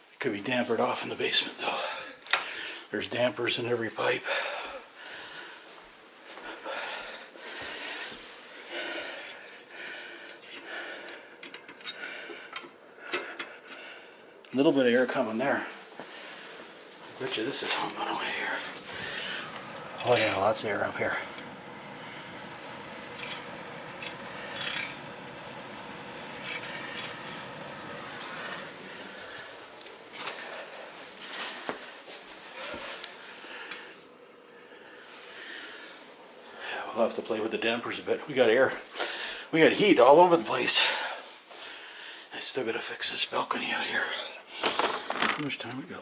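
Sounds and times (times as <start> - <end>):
man breathing: 1.6 - 2.9, 4.2 - 14.4, 15.7 - 37.0, 38.9 - 39.5, 40.8 - 42.3
forced air hissing from register: 12.0 - 41.1.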